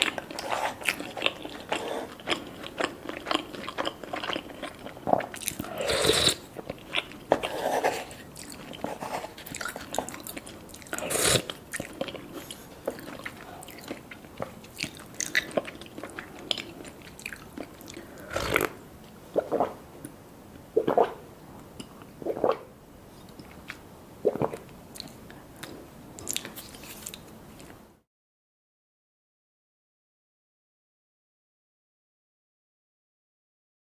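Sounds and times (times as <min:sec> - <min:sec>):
chewing and biting: 0:00.0 - 0:18.7.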